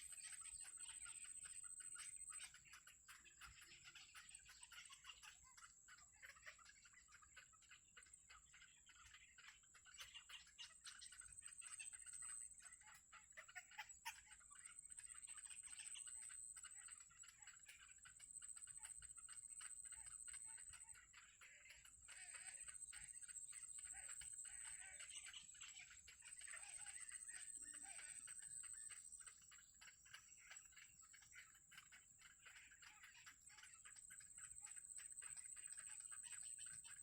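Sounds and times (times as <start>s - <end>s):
birds chirping: 0.0s - 37.0s.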